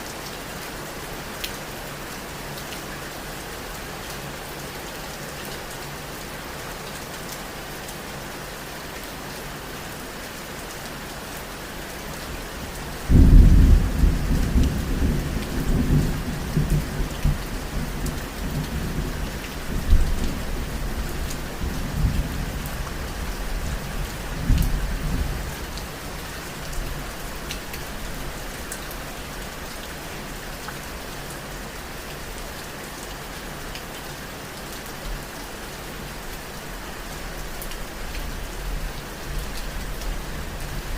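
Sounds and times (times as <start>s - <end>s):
steady rain falling: 0.0s - 40.9s
thunder clap and rumble: 13.1s - 17.9s.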